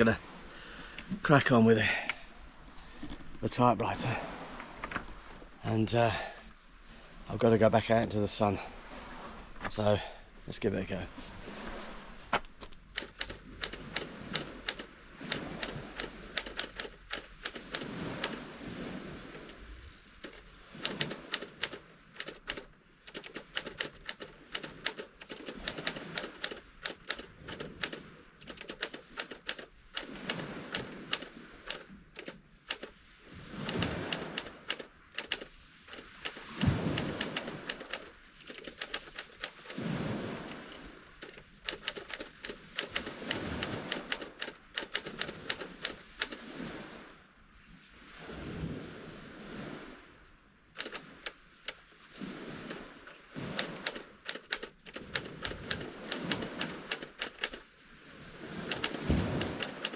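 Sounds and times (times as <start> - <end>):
typewriter keys clacking: 13.0 - 18.4, 20.2 - 32.9, 33.7 - 39.8, 41.2 - 46.4, 50.8 - 51.4, 53.6 - 57.6, 58.7 - 59.9.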